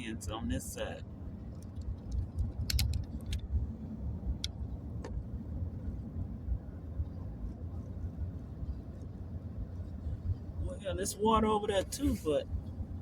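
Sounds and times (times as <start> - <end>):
vehicle cabin road rumble: 0.0 - 13.0
light clicks: 1.5 - 3.5.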